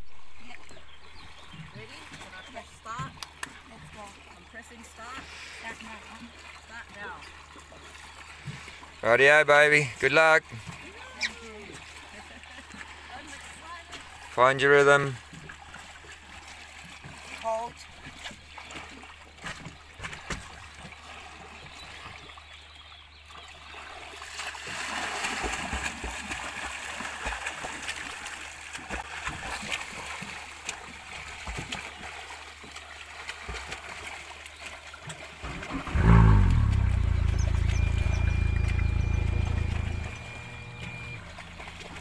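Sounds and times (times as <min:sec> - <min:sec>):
water splashing and lapping: 0:00.0 - 0:42.0.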